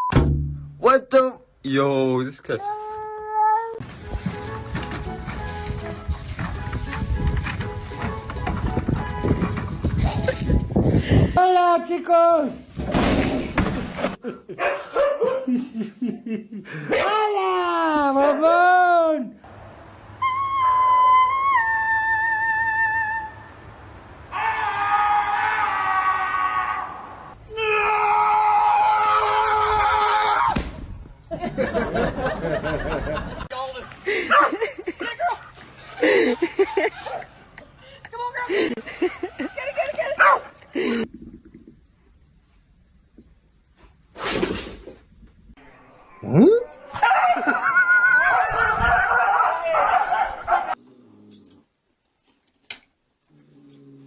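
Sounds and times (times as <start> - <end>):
high-pitched screams: 20.2 - 23.6, 24.3 - 30.6, 46.2 - 49.8.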